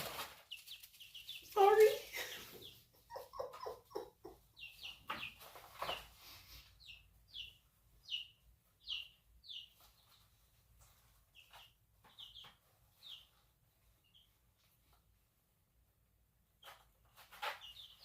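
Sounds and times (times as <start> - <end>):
chickens clucking: 0.0 - 7.5.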